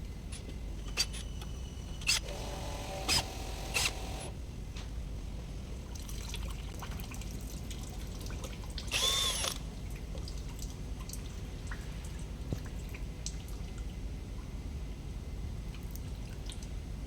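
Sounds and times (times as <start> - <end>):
small clicks of work: 0.3 - 4.9, 8.9 - 9.7
power tool whirring: 0.9 - 4.4, 9.0 - 9.6.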